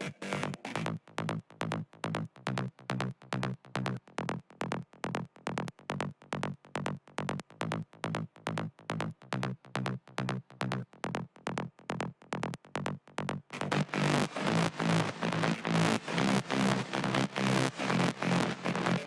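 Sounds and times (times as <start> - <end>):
synth bassline: 13.6 - 19.0.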